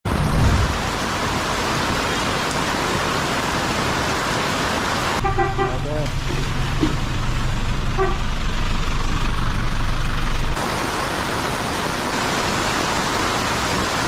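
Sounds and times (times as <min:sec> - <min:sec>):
heavy rain hissing: 0:00.1 - 0:14.0
road traffic rumble: 0:00.1 - 0:14.0
car horn toot: 0:05.2 - 0:06.1, 0:07.9 - 0:08.3.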